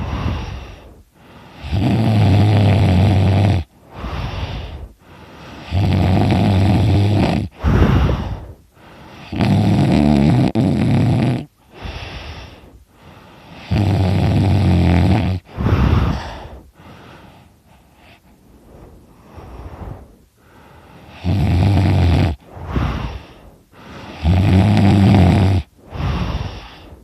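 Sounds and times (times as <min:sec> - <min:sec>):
gusty breaths: 0:00.0 - 0:01.8, 0:03.7 - 0:05.7, 0:07.5 - 0:09.3, 0:11.6 - 0:13.7, 0:15.4 - 0:21.4, 0:22.4 - 0:24.3, 0:25.6 - 0:27.0
man snoring loudly: 0:01.5 - 0:04.7, 0:05.6 - 0:08.3, 0:09.2 - 0:12.5, 0:13.5 - 0:16.5, 0:21.0 - 0:23.3, 0:24.0 - 0:26.9.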